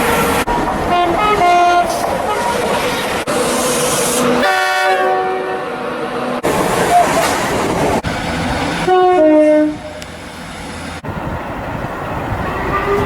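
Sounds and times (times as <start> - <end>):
train passing: 0.0 - 13.0
train horn chord: 4.4 - 5.7.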